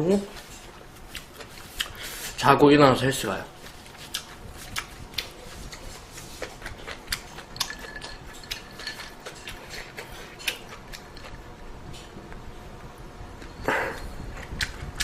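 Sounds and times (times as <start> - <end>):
utensils clicking against a bowl: 7.2 - 11.3.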